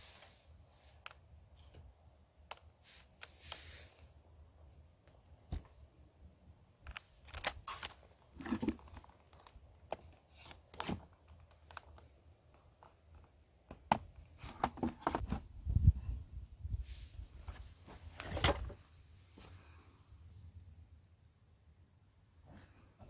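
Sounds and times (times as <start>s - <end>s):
handling clicks and crinkles: 6.8s - 15.4s.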